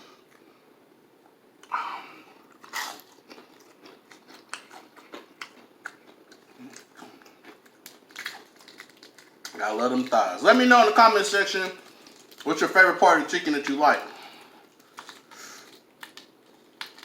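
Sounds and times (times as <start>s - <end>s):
crunchy bites of fried chicken: 2.4s - 10.1s, 14.6s - 17.0s
chewing with crackling clicks: 2.4s - 10.2s, 11.6s - 12.6s, 14.6s - 17.0s.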